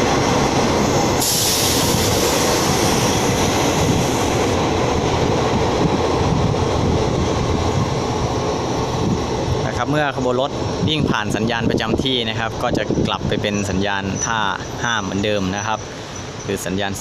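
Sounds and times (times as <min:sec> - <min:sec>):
diesel train engine rumble: 0:00.0 - 0:17.0
high hiss: 0:01.2 - 0:04.6.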